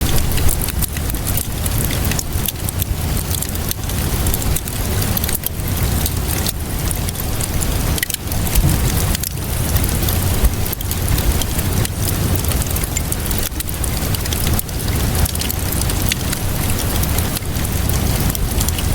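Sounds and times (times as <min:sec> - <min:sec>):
wood fire crackling: 0:00.0 - 0:18.9
low rumble: 0:08.2 - 0:12.4.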